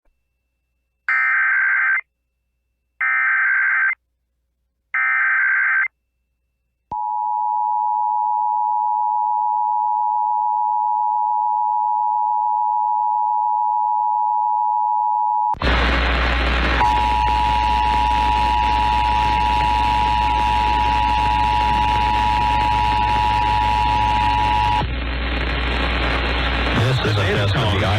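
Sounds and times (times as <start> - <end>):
loud static hiss: 15.6 - 27.9
screeching data tones: 16.8 - 24.9.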